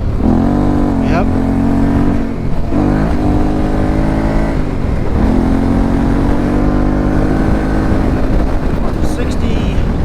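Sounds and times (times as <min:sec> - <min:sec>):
motorcycle engine accelerating: 0:00.0 - 0:10.0.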